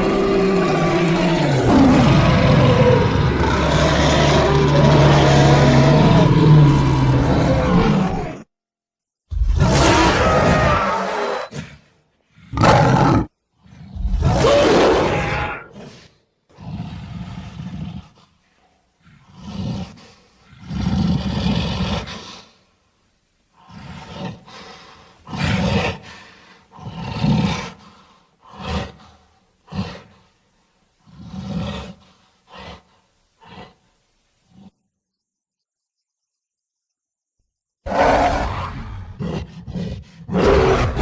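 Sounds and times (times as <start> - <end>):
monster roars and growls: 0.0 - 8.5, 9.3 - 11.8, 12.5 - 16.0, 37.9 - 41.0.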